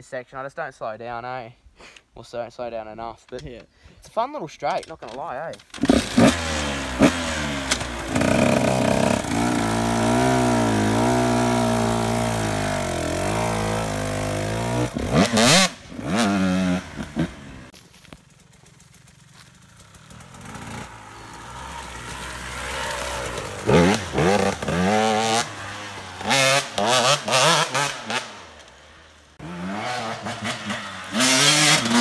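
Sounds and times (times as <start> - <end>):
dirt bike engine revving: 5.7 - 17.7, 18.7 - 32.0.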